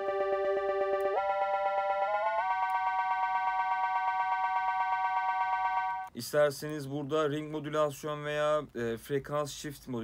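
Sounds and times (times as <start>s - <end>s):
pulsing synthesizer tone: 0.0s - 6.1s.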